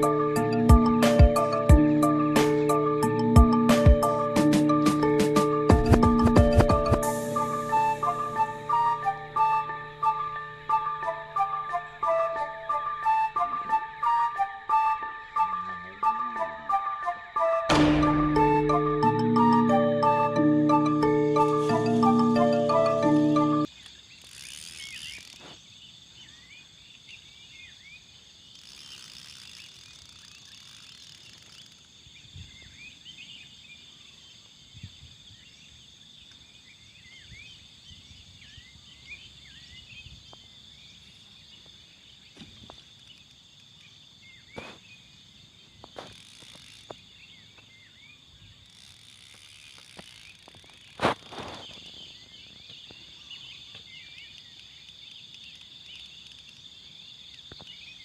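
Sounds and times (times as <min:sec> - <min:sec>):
high-pitched insect drone: 0:06.8 - 0:25.7, 0:28.4 - 0:32.3, 0:45.7 - 0:57.6
sharp clicks or knocks: 0:17.7 - 0:18.5
short insect chirps: 0:21.1 - 0:58.0.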